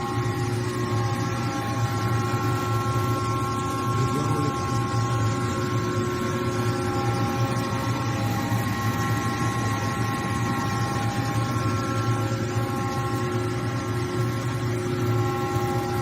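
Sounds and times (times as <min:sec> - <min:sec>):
lathe whining tones: 0:00.0 - 0:16.0.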